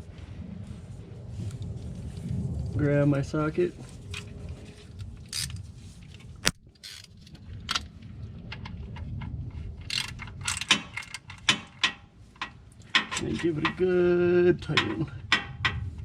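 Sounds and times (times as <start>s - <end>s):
ratchet wrench clicking: 5.3s - 5.6s, 9.9s - 13.8s
metal tool clatter: 9.9s - 13.9s, 14.6s - 15.9s.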